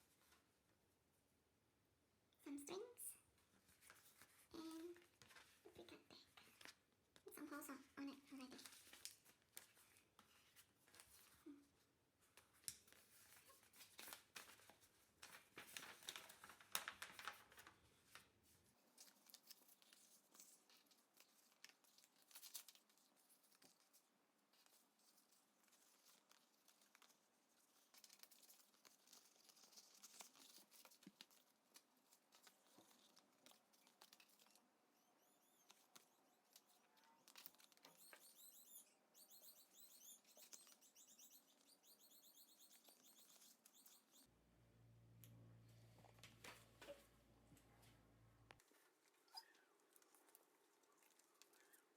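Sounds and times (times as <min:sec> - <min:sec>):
packaging rustling and tearing: 0:12.7 - 0:17.8
faint bird chirps: 0:34.9 - 0:44.3, 0:49.2 - 0:49.9, 0:50.9 - 0:51.9.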